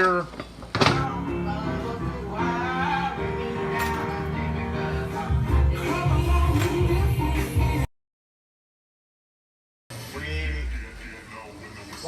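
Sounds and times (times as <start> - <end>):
music: 0.7 - 7.9.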